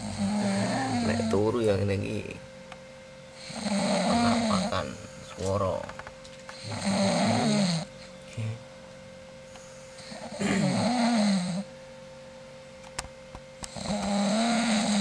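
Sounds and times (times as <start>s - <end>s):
person snoring loudly: 0.0s - 1.5s, 3.4s - 5.1s, 6.5s - 7.9s, 10.0s - 11.7s, 13.7s - 15.0s.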